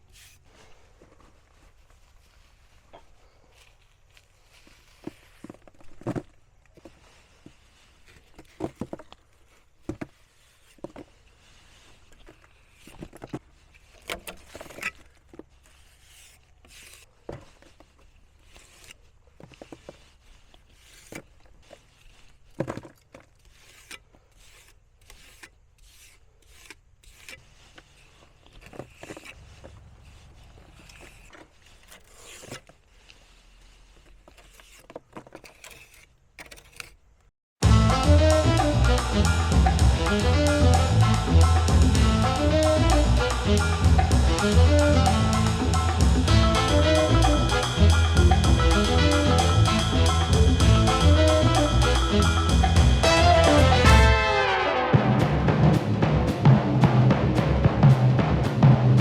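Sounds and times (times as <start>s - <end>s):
trowel scraping and tapping: 12.1s - 29.4s.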